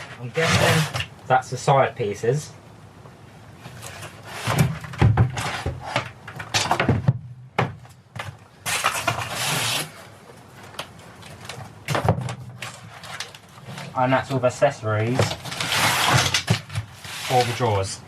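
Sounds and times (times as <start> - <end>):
wooden panels knocking and scraping: 0.0 - 1.1, 3.7 - 9.7, 10.7 - 14.0, 15.0 - 17.8
cardboard packaging rustling: 8.6 - 14.0, 15.0 - 17.9.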